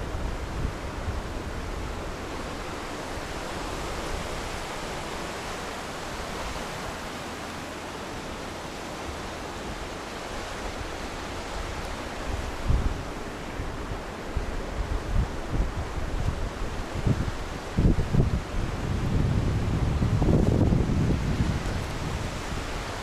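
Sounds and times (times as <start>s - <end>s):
river water flowing: 0.0s - 23.0s
wind buffeting microphone: 9.2s - 23.0s.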